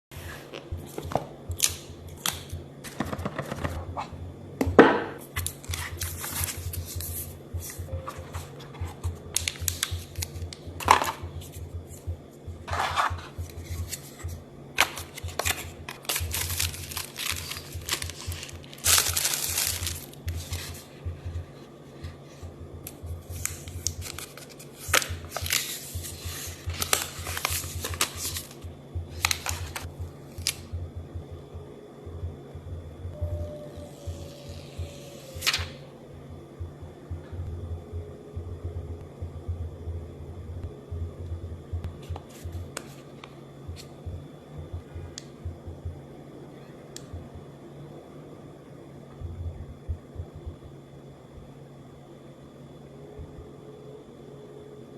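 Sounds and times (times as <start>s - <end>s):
low hum: 0.1s - 54.9s
paper and plastic rustling: 5.4s - 12.0s, 12.7s - 21.0s, 23.3s - 28.6s.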